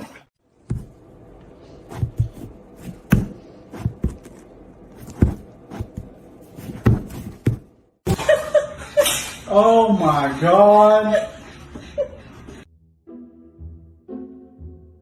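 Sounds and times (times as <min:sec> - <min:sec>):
irregular thumps and knocks: 0:01.9 - 0:04.4, 0:05.0 - 0:07.8.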